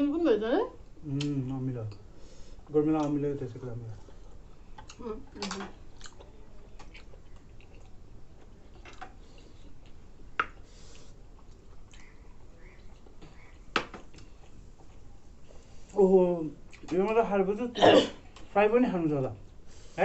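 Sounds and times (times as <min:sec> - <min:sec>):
people chewing food: 0:00.9 - 0:20.0
lip smacks: 0:09.9 - 0:15.0.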